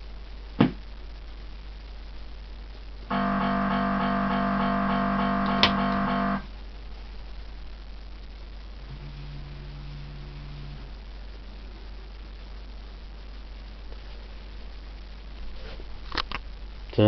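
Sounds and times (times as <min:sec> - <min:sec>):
pulsing electronic tone: 0:03.1 - 0:06.5.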